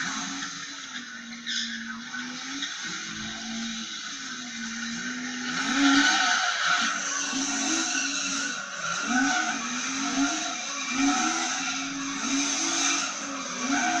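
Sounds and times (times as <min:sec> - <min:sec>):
car engine revving: 0:00.0 - 0:14.0
tyres squealing: 0:00.0 - 0:14.0.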